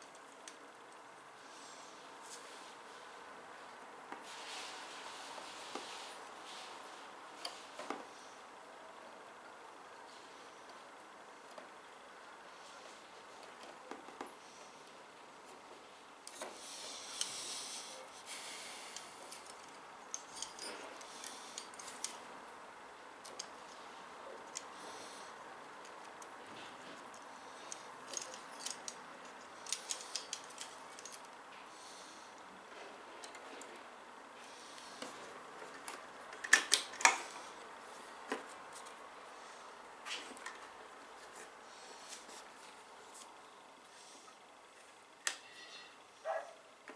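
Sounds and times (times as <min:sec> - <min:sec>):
rustling: 0:01.4 - 0:08.4.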